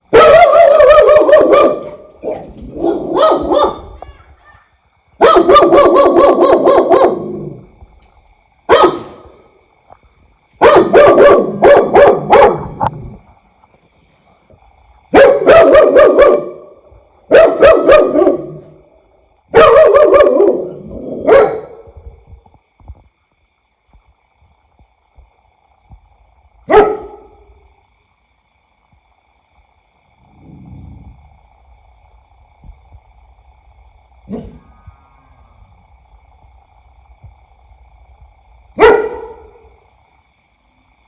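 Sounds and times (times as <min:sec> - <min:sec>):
dog barking loudly: 0:00.1 - 0:04.0, 0:05.2 - 0:07.5, 0:08.7 - 0:09.2, 0:10.6 - 0:12.8, 0:15.1 - 0:16.7, 0:17.3 - 0:18.7, 0:19.5 - 0:21.8, 0:26.7 - 0:27.3, 0:38.8 - 0:39.7.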